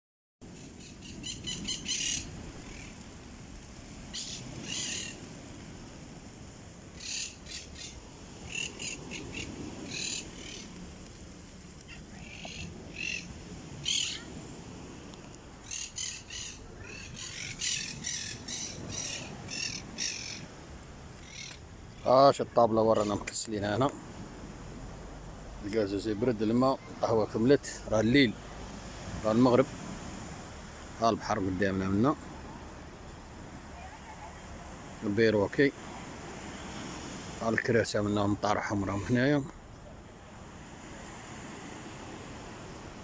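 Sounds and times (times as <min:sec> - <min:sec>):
parakeets squawking: 0:00.6 - 0:03.0, 0:04.1 - 0:05.2, 0:07.0 - 0:10.8, 0:11.8 - 0:14.3, 0:15.6 - 0:20.5, 0:21.2 - 0:22.1.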